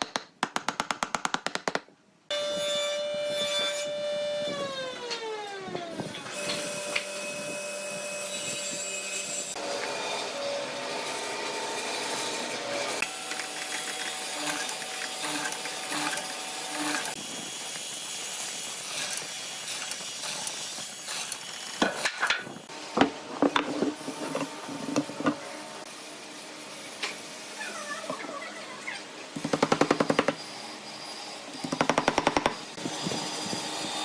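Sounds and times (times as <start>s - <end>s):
wood rubbed and scraped by hand tools: 11.1s - 22.6s.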